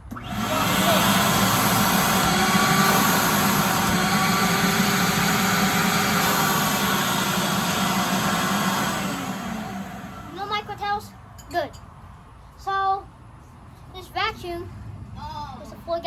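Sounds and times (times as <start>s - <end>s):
shop vac motor whine: 0.0s - 11.1s.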